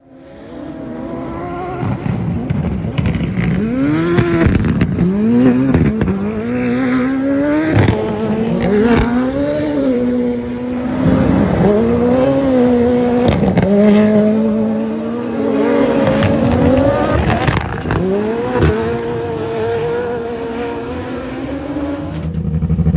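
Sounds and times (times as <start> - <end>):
car engine revving hard: 0.4 - 22.9
exhaust cracks: 1.8 - 6.3, 16.0 - 18.9, 22.0 - 22.9.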